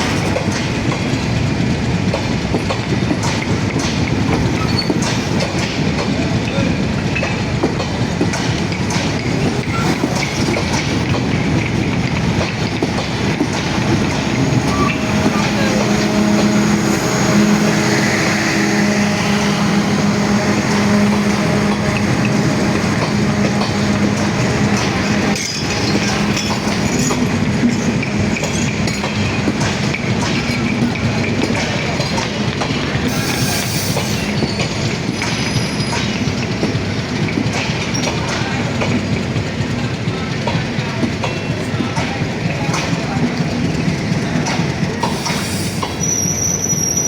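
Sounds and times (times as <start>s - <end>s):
passenger train rolling past: 0.0s - 47.0s
wheel and rail noise: 0.0s - 47.0s
thin wheel squeals: 45.4s - 47.0s.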